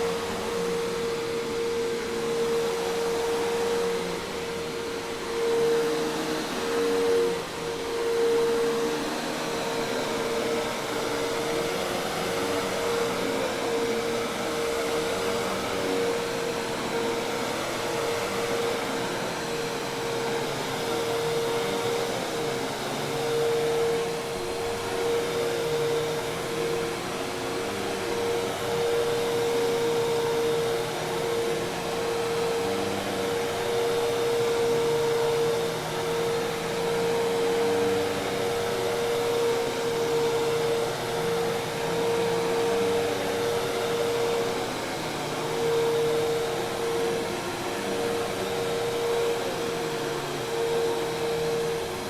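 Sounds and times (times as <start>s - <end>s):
vacuum cleaner running: 0.0s - 52.0s.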